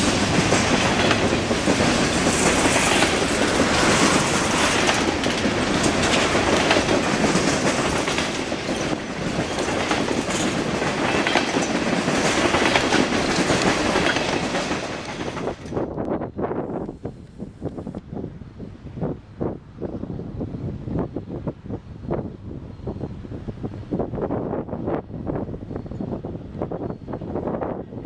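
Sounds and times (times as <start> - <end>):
train wheels clacking on rails: 0.0 - 15.9.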